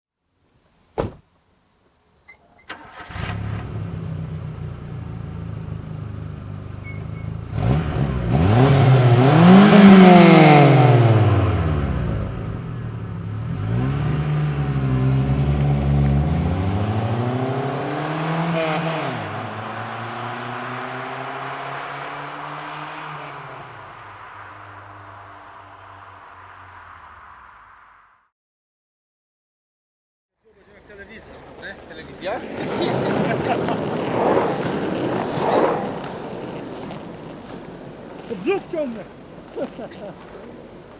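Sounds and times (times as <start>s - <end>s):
short knock: 1.0s - 1.2s
car engine starting and revving: 2.6s - 28.2s, 30.7s - 40.9s.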